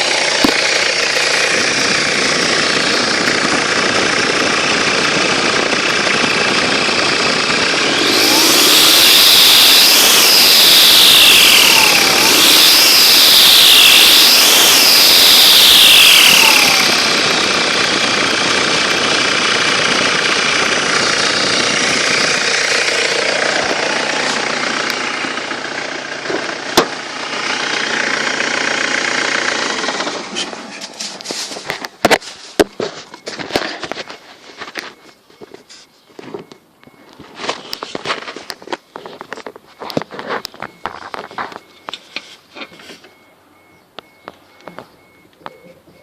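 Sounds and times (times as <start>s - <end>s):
engine revving: 0.0s - 31.2s
high turbo whine: 0.0s - 35.6s.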